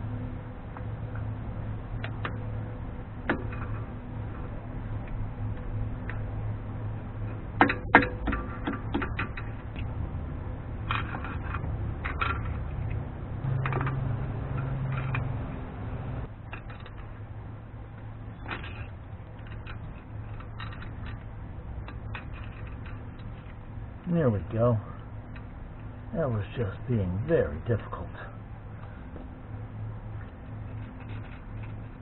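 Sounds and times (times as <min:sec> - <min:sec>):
steady low hum: 0:00.0 - 0:32.0
metal pick clicking and scraping: 0:18.4 - 0:23.6, 0:30.4 - 0:32.0.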